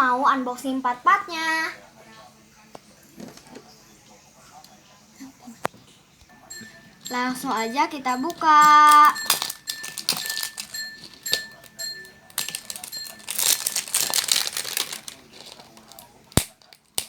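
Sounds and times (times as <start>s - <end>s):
packaging crinkling and rustling: 7.6s - 17.0s
scattered clicks: 8.3s - 17.0s.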